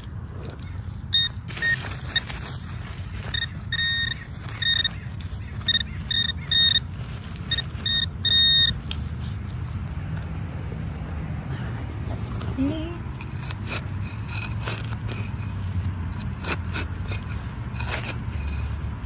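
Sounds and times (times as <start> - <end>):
rustle of handling: 0.0 - 10.3
metal detector beeping: 1.1 - 9.0.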